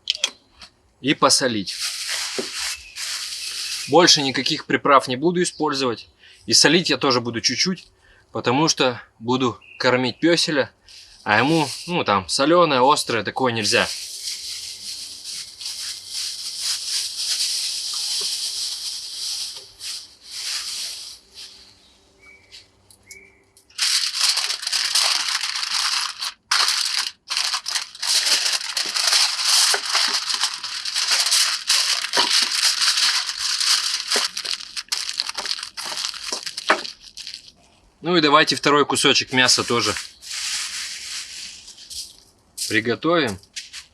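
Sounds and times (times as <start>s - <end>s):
aluminium foil crinkling: 1.7s - 4.6s, 13.6s - 21.7s, 23.7s - 37.9s, 39.3s - 43.9s.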